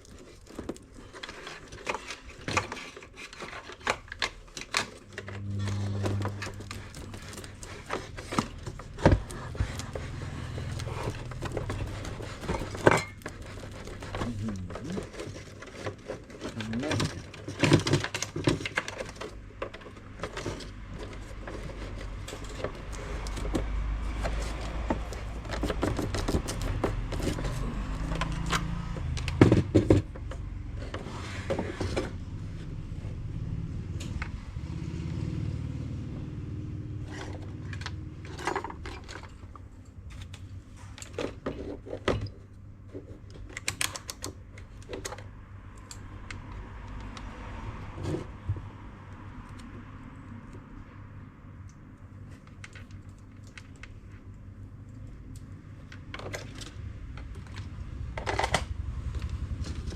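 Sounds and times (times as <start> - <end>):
steady low hum: 5.0 - 17.2.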